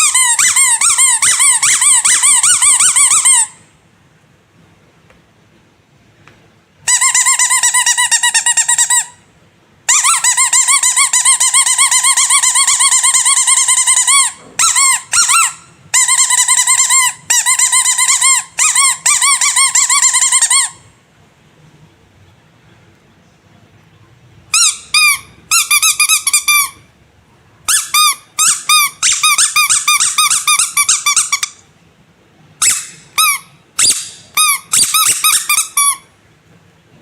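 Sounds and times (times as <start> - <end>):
squeaky rubber toy squeaking: 0.0 - 3.6, 6.8 - 9.2, 9.9 - 20.9, 24.5 - 26.9, 27.7 - 31.7, 32.6 - 36.2.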